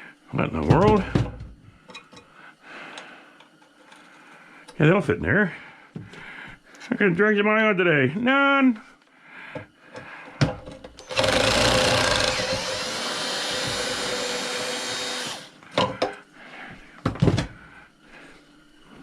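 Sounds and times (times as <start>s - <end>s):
power drill running: 11.0s - 15.6s.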